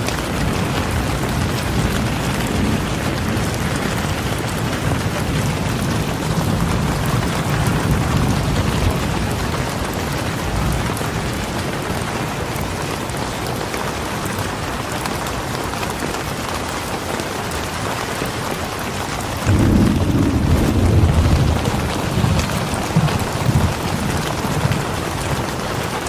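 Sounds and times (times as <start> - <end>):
low rumble of thunder: 0.0 - 13.2, 19.4 - 26.0
steady rain falling: 0.0 - 26.0.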